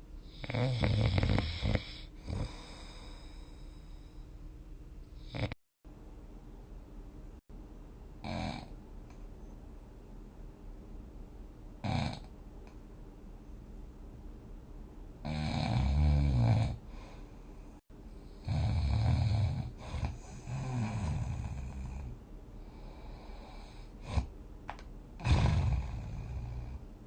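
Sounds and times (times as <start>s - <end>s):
person snoring: 0.3s - 3.9s, 5.2s - 5.6s, 8.2s - 8.7s, 11.8s - 12.3s, 15.2s - 17.2s, 18.2s - 24.3s, 25.2s - 26.8s.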